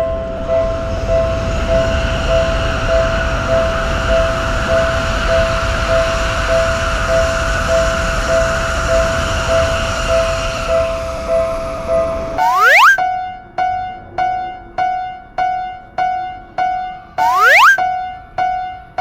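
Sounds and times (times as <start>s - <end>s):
passing train rumble: 0.0s - 12.4s.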